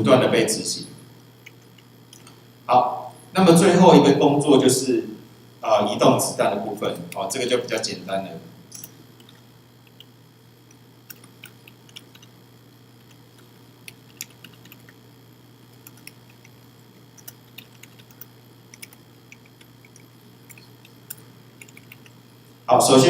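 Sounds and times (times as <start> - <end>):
low electrical hum: 0.0 - 23.0
computer keyboard typing: 8.7 - 10.1, 11.1 - 12.3, 13.1 - 15.0, 15.8 - 16.6, 17.2 - 22.2.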